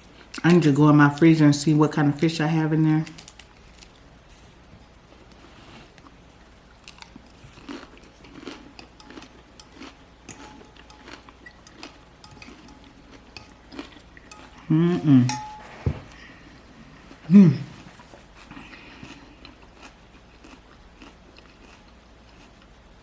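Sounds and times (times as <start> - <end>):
dishes and cutlery clinking: 8.8 - 16.2.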